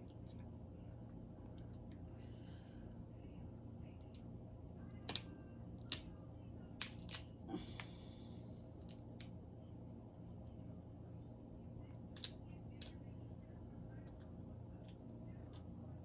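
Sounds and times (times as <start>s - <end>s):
steady low hum: 0.0s - 16.0s
crab shell cracking: 6.8s - 8.0s, 8.8s - 9.3s, 12.1s - 13.0s.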